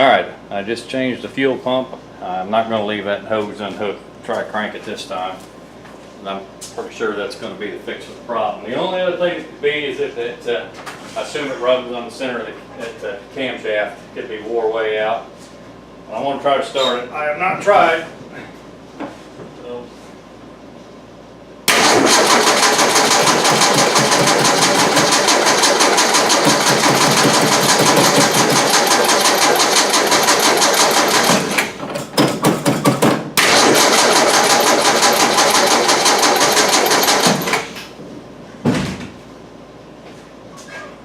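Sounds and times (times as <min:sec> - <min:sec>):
car engine cranking: 0:21.7 - 0:31.8, 0:33.4 - 0:37.8.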